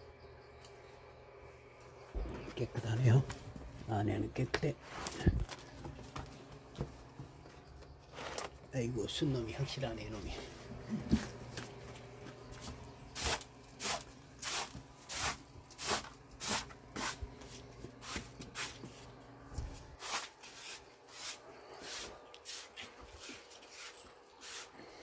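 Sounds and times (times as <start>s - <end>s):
footsteps walking: 3.2s - 4.0s, 4.8s - 7.7s, 10.3s - 14.1s.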